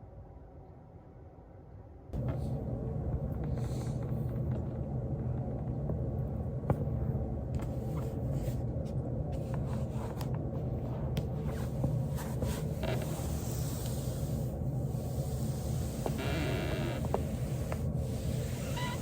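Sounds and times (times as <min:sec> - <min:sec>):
body rolling on foam roller: 0:10.7 - 0:19.0.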